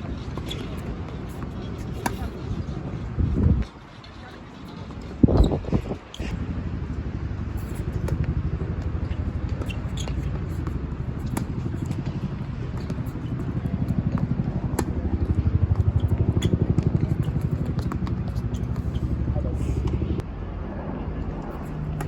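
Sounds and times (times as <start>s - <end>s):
wind buffeting microphone: 1.6s - 4.0s, 4.8s - 20.2s.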